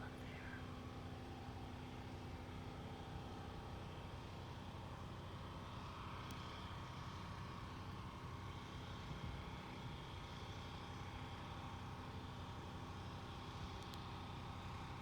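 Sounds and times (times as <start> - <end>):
faint steady hum: 0.0 - 0.9.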